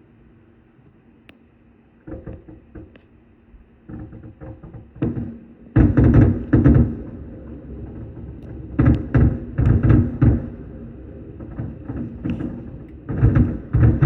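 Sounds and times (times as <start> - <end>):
fireworks booms and bangs: 5.0 - 14.0.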